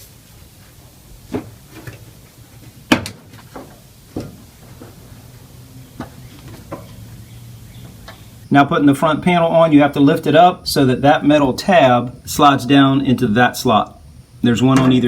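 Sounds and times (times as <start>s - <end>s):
sheet-metal panels knocking: 13.7s - 15.0s.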